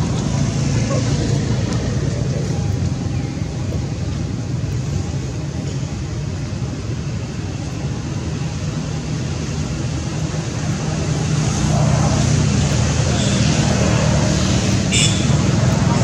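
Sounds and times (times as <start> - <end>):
vehicle engine rumbling: 0.0 - 16.0.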